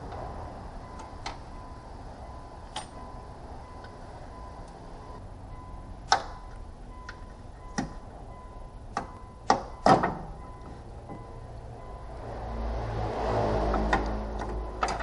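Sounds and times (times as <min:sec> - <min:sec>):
sharp knocks and clicks: 0:06.1 - 0:08.0, 0:08.9 - 0:11.2.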